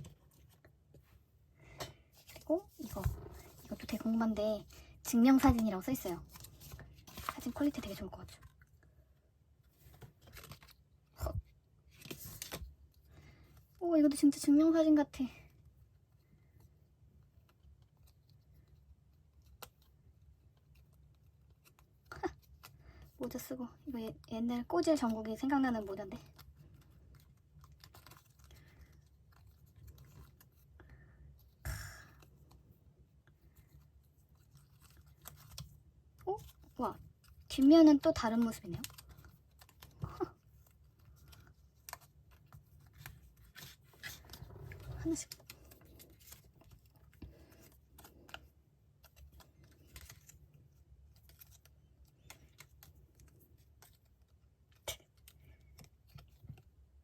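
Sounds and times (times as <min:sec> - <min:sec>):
paper prints rustling: 0:00.0 - 0:08.7, 0:09.6 - 0:14.6, 0:17.4 - 0:57.0
papery rustle: 0:05.4 - 0:08.5, 0:33.4 - 0:56.6.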